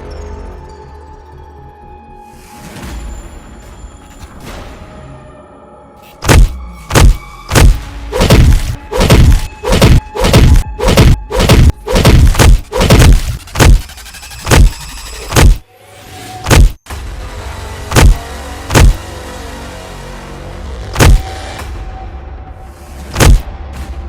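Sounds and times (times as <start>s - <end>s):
background music: 0.0s - 13.1s, 14.8s - 24.0s
heavy punch and thud effects: 6.2s - 13.8s, 14.4s - 15.6s, 16.5s - 16.8s, 17.9s - 19.0s, 20.9s - 21.4s, 23.1s - 24.0s.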